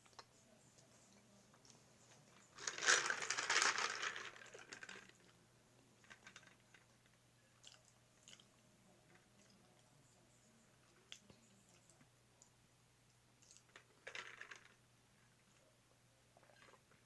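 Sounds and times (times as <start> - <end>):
crinkling and rustling: 0.0 - 5.4, 6.0 - 7.2, 13.7 - 14.8
mouth clicks of eating: 13.4 - 13.8.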